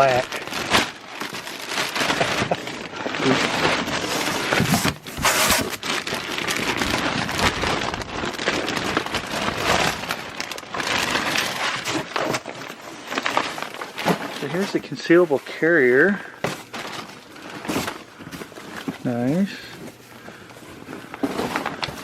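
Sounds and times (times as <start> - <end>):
plastic packaging crinkling: 0.0 - 22.0.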